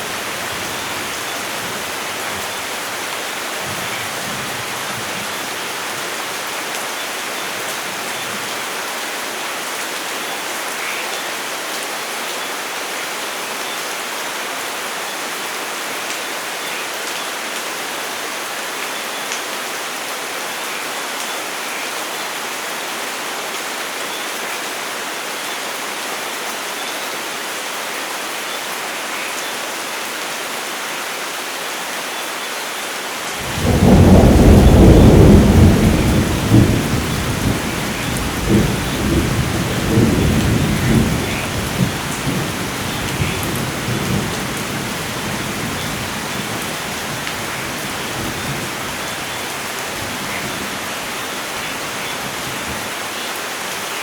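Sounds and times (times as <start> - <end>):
steady rain: 0.0 - 54.0
thunder rumbling: 33.4 - 52.9.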